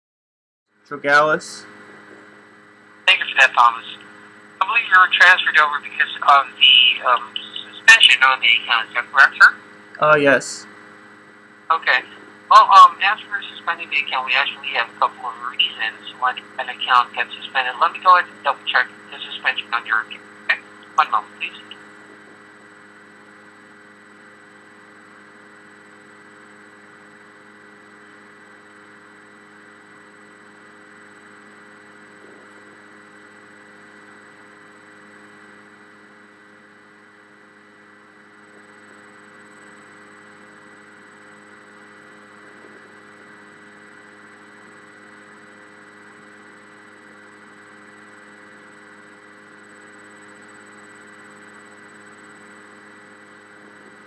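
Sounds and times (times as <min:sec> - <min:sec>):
telephone line hum and hiss: 0:00.9 - 0:54.0
faint steady tones: 0:02.6 - 0:09.6, 0:11.3 - 0:22.2.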